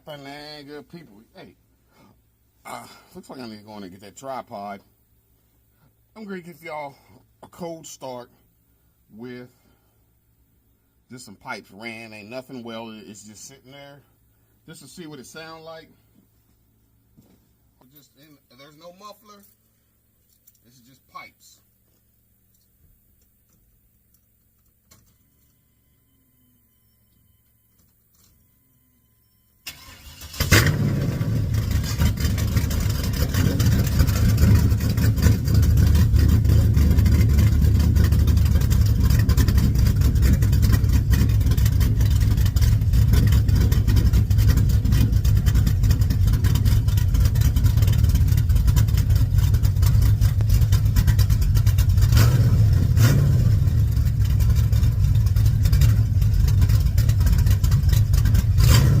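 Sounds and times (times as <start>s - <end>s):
car engine cranking and starting: 29.6s - 59.0s
loud engine idling: 31.1s - 58.8s.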